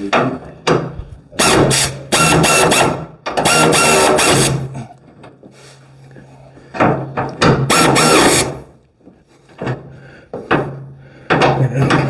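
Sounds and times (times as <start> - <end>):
power tool motor whining: 1.4 - 4.7, 7.7 - 8.7.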